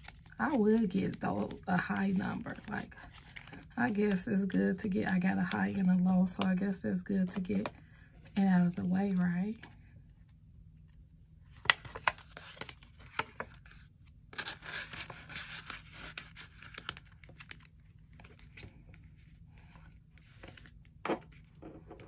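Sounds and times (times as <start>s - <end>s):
paper rustling and crinkling: 0.0s - 4.4s, 11.4s - 22.0s.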